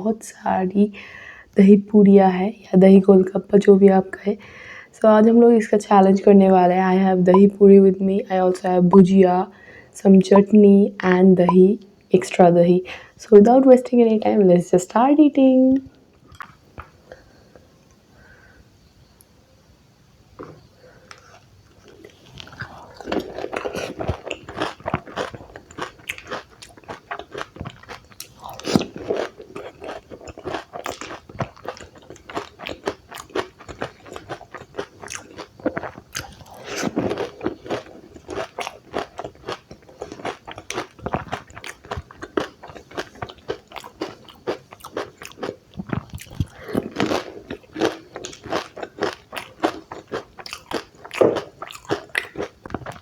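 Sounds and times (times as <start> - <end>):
crunching and chewing food: 20.4 - 53.0.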